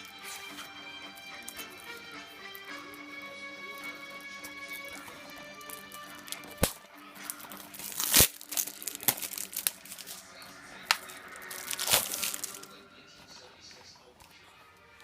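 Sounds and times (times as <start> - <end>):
quiet background music: 0.0 - 15.0
plastic clicks and snaps: 5.6 - 10.2
plastic wrap crinkling and tearing: 5.6 - 12.7.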